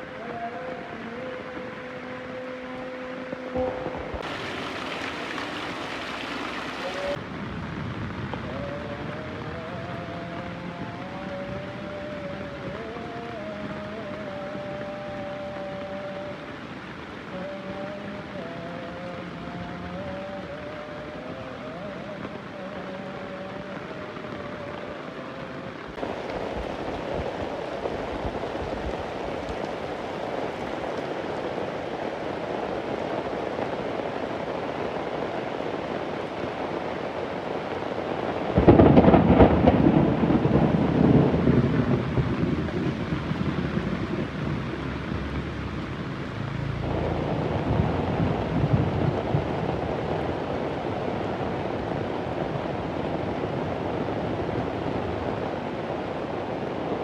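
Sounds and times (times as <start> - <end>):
heavy rain: 0.0 - 57.0
thunder clap and rumble: 26.0 - 30.7, 38.4 - 45.9, 46.7 - 55.6.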